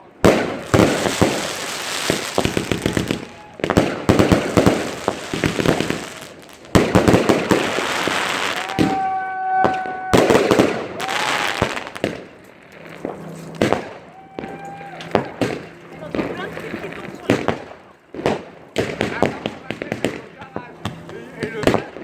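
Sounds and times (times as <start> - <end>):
fireworks crackling and banging: 0.0 - 22.0.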